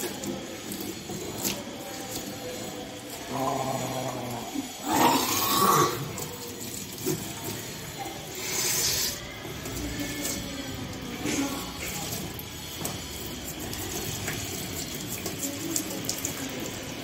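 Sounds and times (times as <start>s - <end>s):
person retching: 3.3s - 6.2s.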